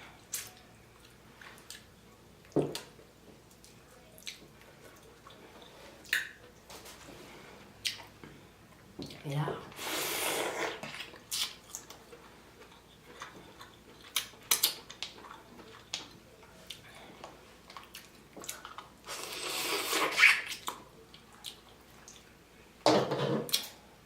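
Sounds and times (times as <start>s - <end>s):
wet sucking sound: 9.8s - 10.9s.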